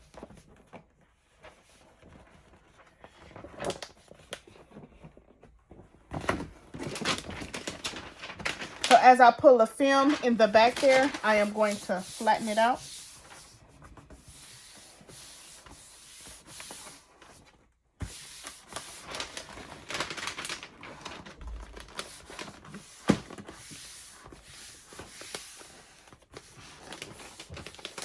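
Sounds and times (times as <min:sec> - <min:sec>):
hands rubbing paper on plastic: 0:07.8 - 0:28.0.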